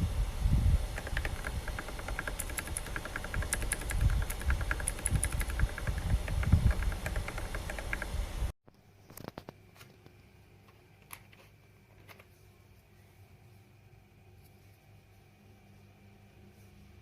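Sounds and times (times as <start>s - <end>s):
steady low rumble: 0.0s - 8.5s
mechanical keyboard key clacks: 1.0s - 8.1s.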